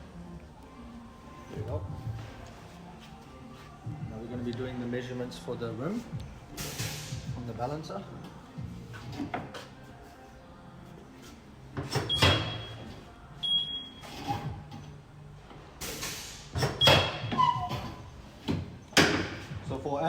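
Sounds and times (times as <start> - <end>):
brief air hiss: 6.6 - 7.3, 15.8 - 16.7.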